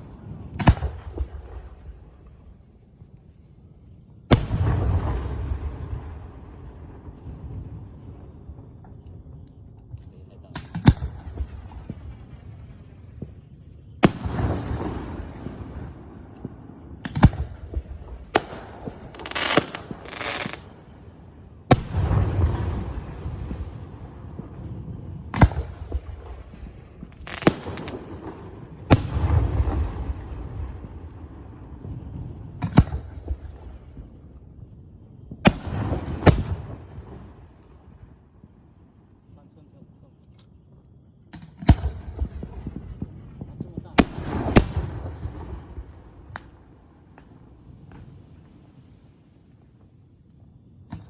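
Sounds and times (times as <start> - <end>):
rolling echo: 0.0 - 38.4, 41.3 - 48.2
firework hissing: 10.0 - 32.8
firework shell booms: 21.7 - 31.2, 41.3 - 48.1.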